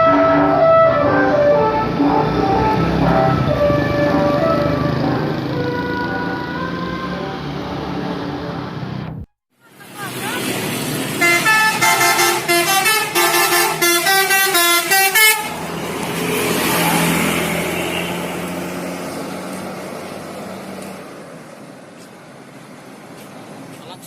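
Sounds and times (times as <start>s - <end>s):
bus multi-tone horn: 0.0s - 8.1s, 11.2s - 15.6s, 17.4s - 18.5s
bus engine passing: 0.0s - 24.0s.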